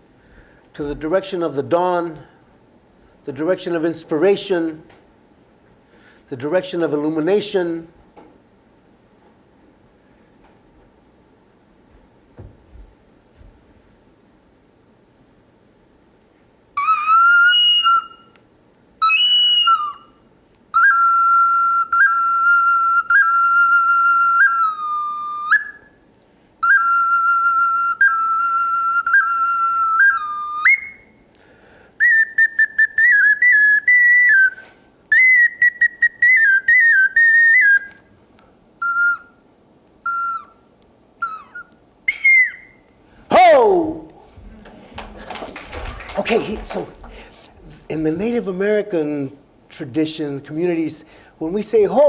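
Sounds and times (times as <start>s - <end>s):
whistle flute melody: 16.8s - 18.4s, 19.0s - 26.0s, 26.6s - 31.2s, 32.0s - 38.1s, 38.8s - 39.4s, 40.0s - 43.8s, 45.5s - 46.8s.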